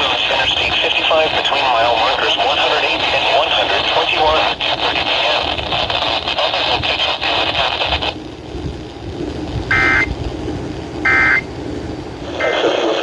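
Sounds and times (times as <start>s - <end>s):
noisy radio broadcast: 0.0s - 8.2s, 12.2s - 13.0s
screechy data bursts: 9.7s - 10.1s, 11.0s - 11.5s.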